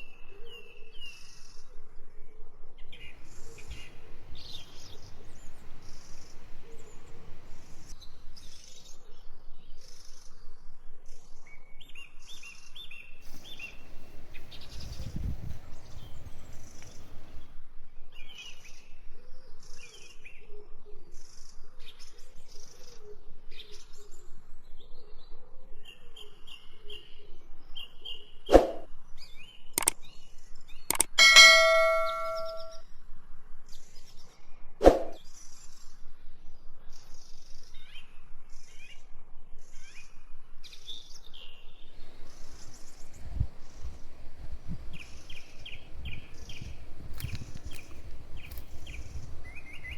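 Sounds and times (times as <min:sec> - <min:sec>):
birds chirping: 0:03.0 - 0:08.1, 0:13.3 - 0:17.5, 0:31.0 - 0:32.8, 0:42.0 - 0:49.9
low wavering bird call: 0:03.2 - 0:07.9, 0:13.3 - 0:17.4, 0:31.2 - 0:32.8, 0:42.0 - 0:49.9
steady background hiss: 0:03.2 - 0:08.2, 0:13.3 - 0:17.5, 0:42.0 - 0:49.9.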